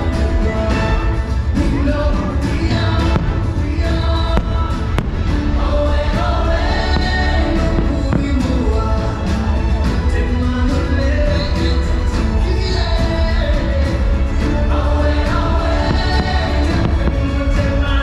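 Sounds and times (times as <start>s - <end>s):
heavy low rumble: 0.0s - 18.0s
loud soundtrack music with choir: 0.0s - 18.0s
firework bangs: 2.7s - 8.7s, 15.7s - 18.0s.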